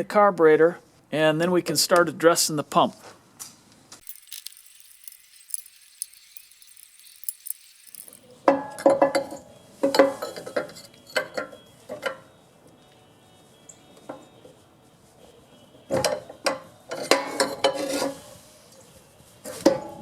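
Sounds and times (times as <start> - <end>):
metal tools clinking and clanking: 4.0 - 8.3.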